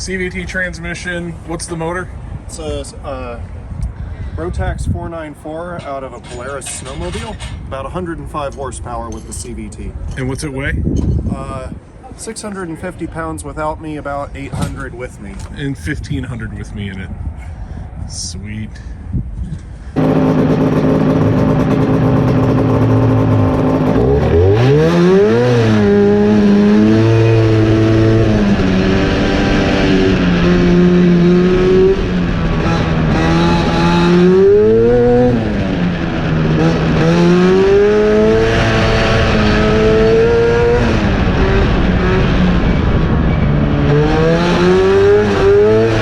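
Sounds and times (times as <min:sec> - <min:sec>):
race car engine revving: 0:20.0 - 0:46.0.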